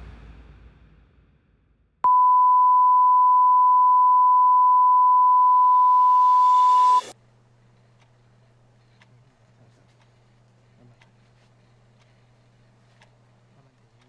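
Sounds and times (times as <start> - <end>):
steady electronic beep: 2.1 - 7.1.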